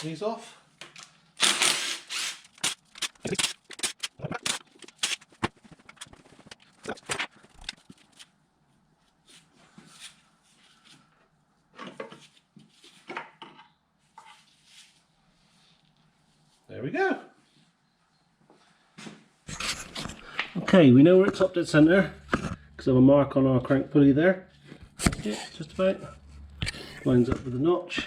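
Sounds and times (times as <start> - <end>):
tool noise: 1.4 - 6.2.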